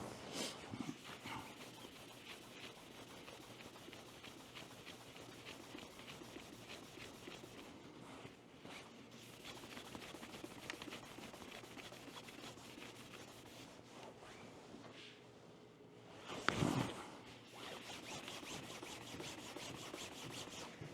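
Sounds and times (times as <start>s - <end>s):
cloth rubbing surfaces: 17.5s - 20.7s.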